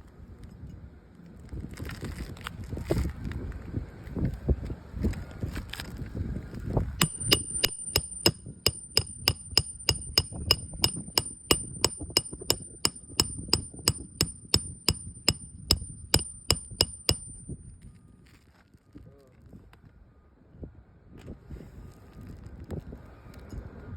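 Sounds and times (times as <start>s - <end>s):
wind noise on microphone: 0.2s - 7.6s, 20.6s - 23.9s
hammer driving nails: 7.0s - 17.6s.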